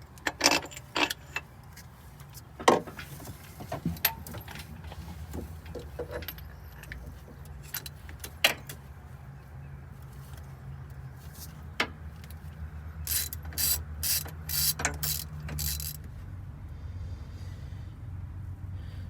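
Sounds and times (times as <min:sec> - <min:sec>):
hand ratchet clicking: 0:13.0 - 0:16.0.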